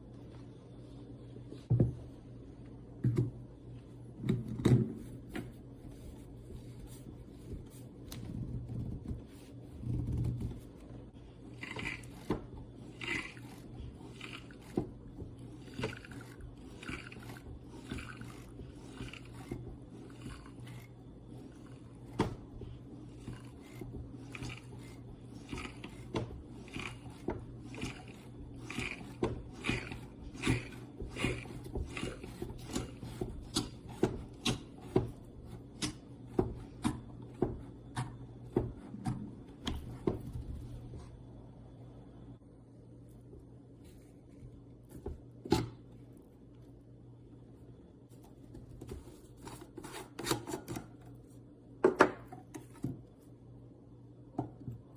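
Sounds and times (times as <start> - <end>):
espresso maker scraping strokes: 11.5 - 35.6.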